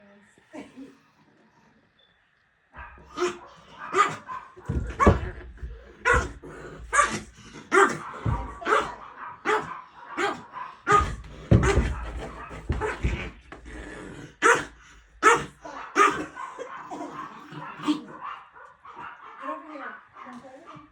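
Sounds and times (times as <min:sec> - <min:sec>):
dog barking: 0:02.8 - 0:13.4, 0:14.4 - 0:20.9.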